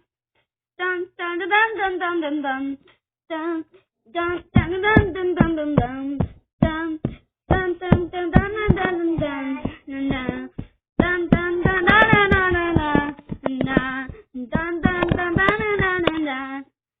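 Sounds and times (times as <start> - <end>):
child singing wordless tune: 0.8 - 16.8
sharp beats: 4.6 - 16.2.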